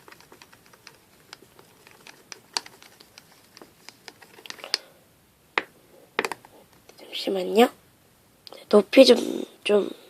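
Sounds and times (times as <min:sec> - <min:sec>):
glue stirred in container: 0:00.0 - 0:04.8.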